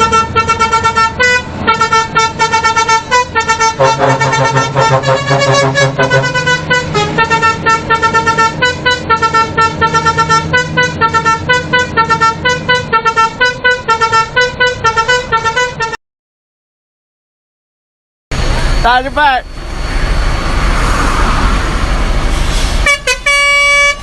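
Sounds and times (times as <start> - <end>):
lorry musical horn melody: 0.0 - 16.0, 22.8 - 24.0.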